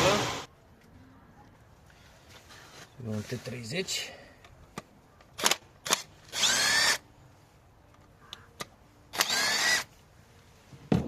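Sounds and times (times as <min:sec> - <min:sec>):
cordless drill spinning up: 0:05.9 - 0:07.0, 0:09.1 - 0:09.9.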